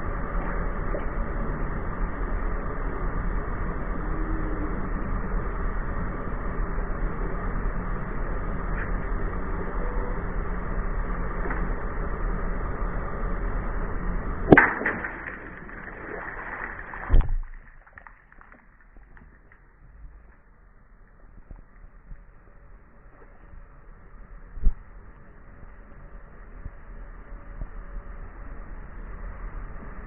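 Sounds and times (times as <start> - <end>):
heavy thud: 16.9 - 17.7.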